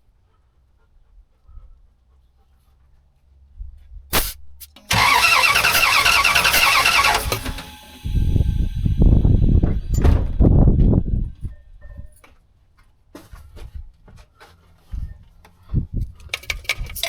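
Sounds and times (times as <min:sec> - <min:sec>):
sharp click: 0:04.1 - 0:05.0
engine cranking on starter: 0:04.2 - 0:10.4.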